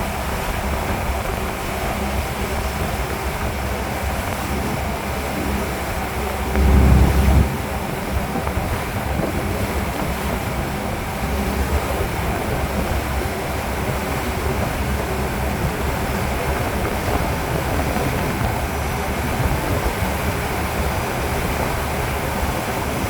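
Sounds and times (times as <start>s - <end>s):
boat engine rumble: 0.0s - 23.0s
rushing water: 0.0s - 23.0s
wind on microphone: 0.0s - 23.0s
low bump: 6.4s - 10.7s.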